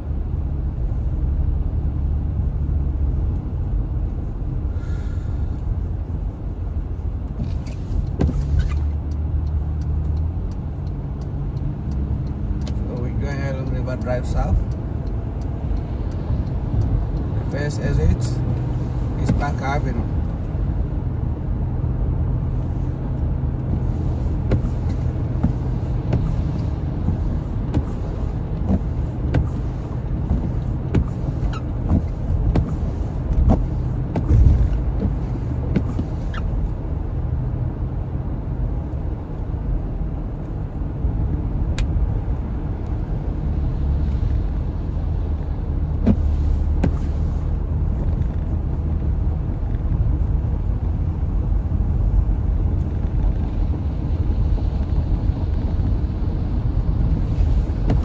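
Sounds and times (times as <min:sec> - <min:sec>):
car engine and tyre rumble: 0:00.0 - 0:58.0
light ticks: 0:07.2 - 0:20.5.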